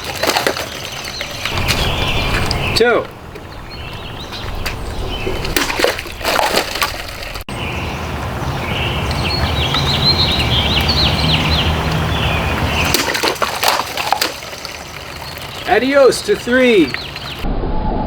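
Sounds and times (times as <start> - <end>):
knife slashing plastic bottles: 0.0 - 2.0, 5.5 - 7.4, 12.8 - 14.8
birds chirping: 0.0 - 17.5
water splashing and trickling: 0.0 - 17.5.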